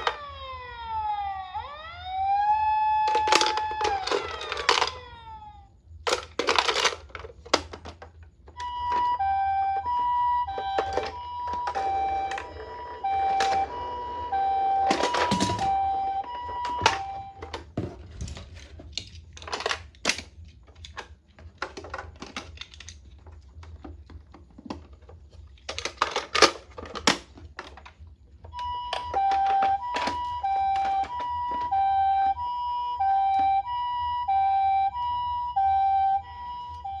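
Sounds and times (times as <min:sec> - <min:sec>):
plastic toy cars clicking and knocking: 0:00.0 - 0:05.4, 0:06.0 - 0:37.0
toy two-tone siren: 0:00.0 - 0:07.1, 0:08.5 - 0:17.8, 0:28.5 - 0:37.0.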